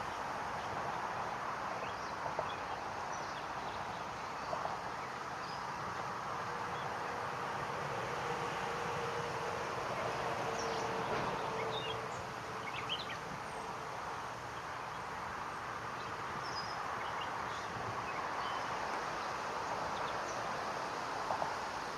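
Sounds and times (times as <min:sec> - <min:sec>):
outdoor background hiss: 0:00.0 - 0:21.9.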